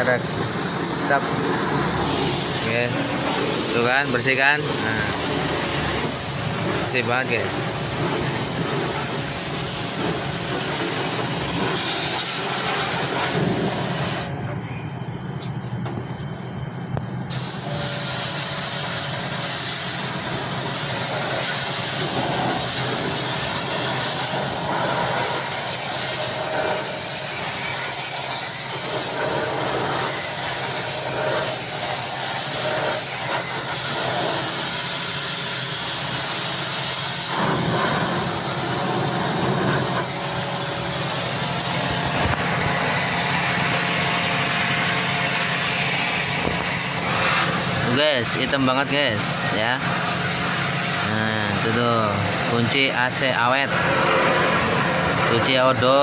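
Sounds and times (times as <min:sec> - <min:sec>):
pressure washer spray hissing: 0:00.0 - 0:14.4, 0:17.3 - 0:56.0
washer motor hum: 0:00.0 - 0:17.2, 0:37.6 - 0:48.4.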